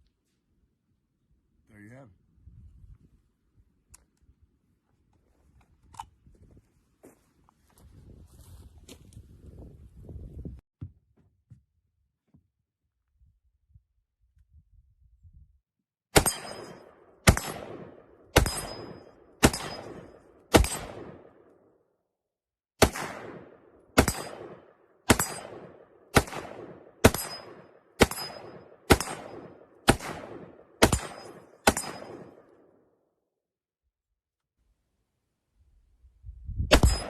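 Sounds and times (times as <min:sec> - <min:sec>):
gunshots with ringing echo: 0:16.1 - 0:21.7, 0:22.8 - 0:33.0, 0:36.7 - 0:37.0.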